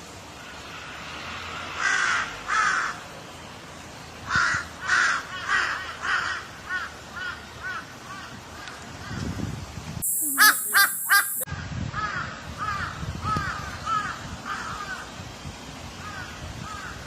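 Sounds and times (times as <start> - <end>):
crow cawing: 10.1 - 11.4.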